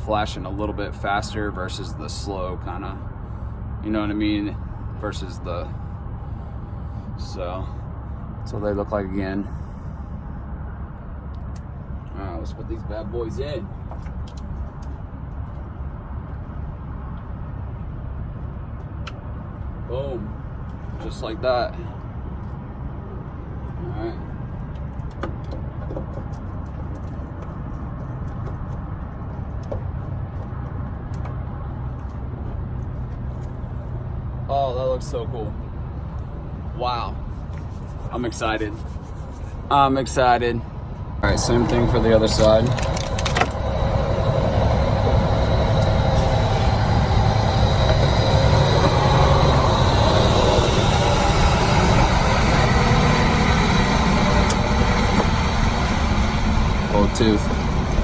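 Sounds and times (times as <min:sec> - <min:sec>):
diesel truck engine rumble: 0:00.0 - 0:58.0
truck engine idling: 0:39.6 - 0:58.0.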